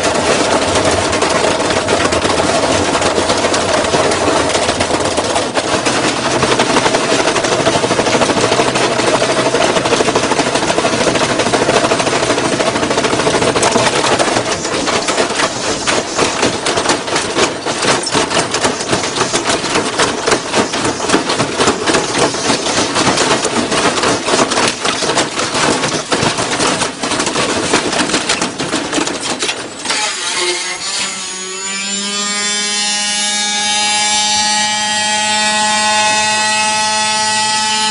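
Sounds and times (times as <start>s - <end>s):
washing machine clattering and banging: 0.0s - 30.3s
multi-pitched machine whine: 29.6s - 37.9s.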